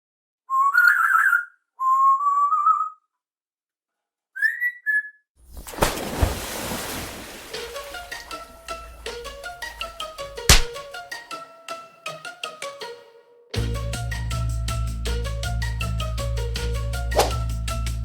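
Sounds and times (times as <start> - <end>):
person whistling: 1.8 - 3.0
light plucked music: 7.4 - 18.0.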